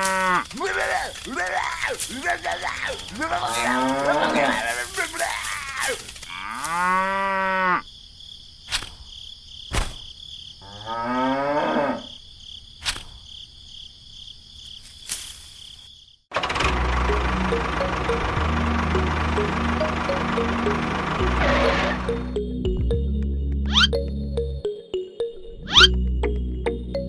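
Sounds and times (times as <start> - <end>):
cattle mooing: 0.0 - 7.8, 10.6 - 12.1, 21.2 - 22.3.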